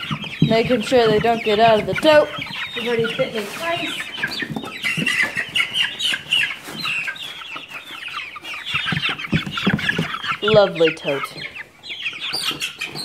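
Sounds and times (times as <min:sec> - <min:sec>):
chicks peeping: 0:00.0 - 0:13.0.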